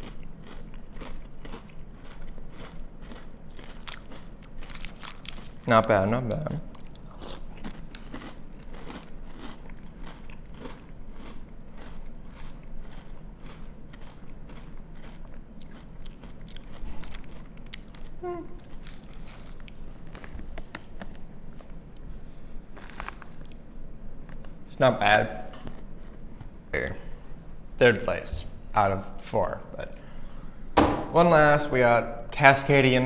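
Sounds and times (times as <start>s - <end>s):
crunchy cereal chewing: 0.0s - 5.7s, 6.7s - 22.1s, 22.7s - 23.6s.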